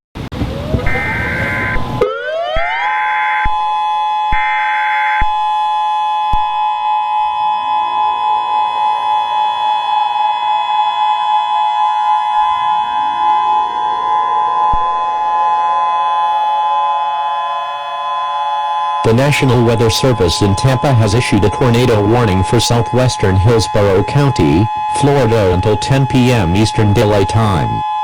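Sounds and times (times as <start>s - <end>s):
siren wailing: 0.4s - 28.0s
screeching data bursts: 0.9s - 5.2s.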